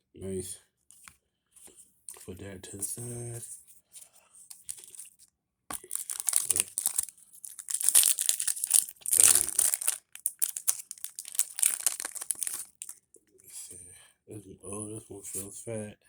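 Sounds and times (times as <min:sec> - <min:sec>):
foil wrapper crinkling and tearing: 0:04.5 - 0:05.0, 0:05.7 - 0:13.0.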